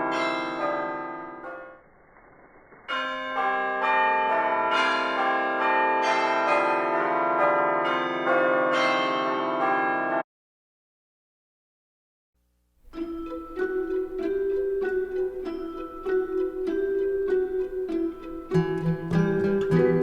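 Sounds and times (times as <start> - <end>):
bells chiming: 12.9 - 20.0.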